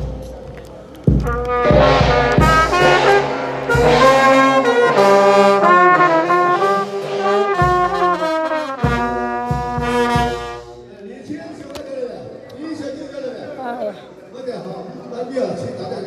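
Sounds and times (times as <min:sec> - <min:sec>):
heavy drum beats: 0:00.0 - 0:10.9
brass band playing: 0:00.0 - 0:11.0.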